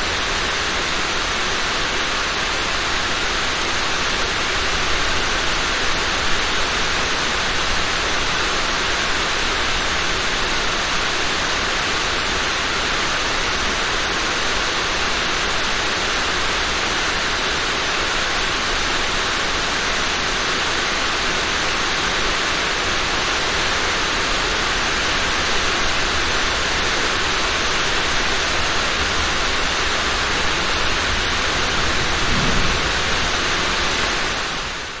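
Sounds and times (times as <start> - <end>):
rain hissing: 26.8 - 35.0
low rumble: 31.4 - 34.6.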